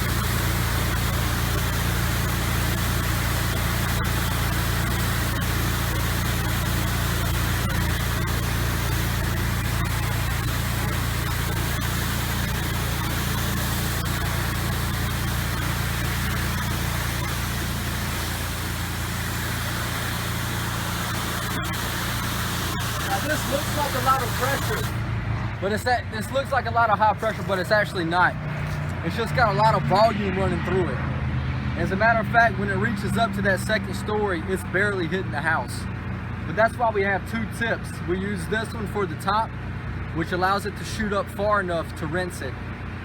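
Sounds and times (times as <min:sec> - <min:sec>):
water spray hissing on siding: 0:00.0 - 0:25.0
pressure washer engine running: 0:00.0 - 0:43.0.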